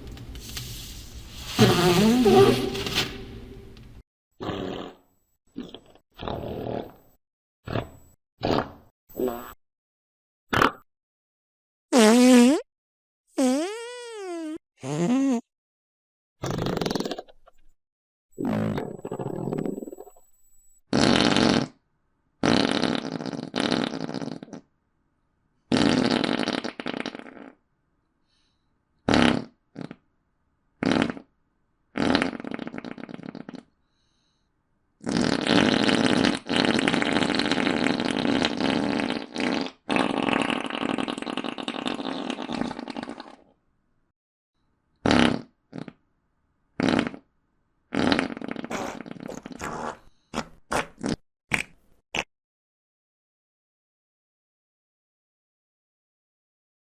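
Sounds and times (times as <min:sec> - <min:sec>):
fart sound effects: 0:01.5 - 0:03.6, 0:04.4 - 0:05.0, 0:11.9 - 0:12.7, 0:13.4 - 0:15.5, 0:18.4 - 0:20.0, 0:20.9 - 0:21.8, 0:22.4 - 0:24.6, 0:25.7 - 0:27.6, 0:29.1 - 0:30.0, 0:30.8 - 0:31.3, 0:32.0 - 0:33.7, 0:35.0 - 0:43.5, 0:45.0 - 0:46.0, 0:46.8 - 0:47.3, 0:47.9 - 0:52.3.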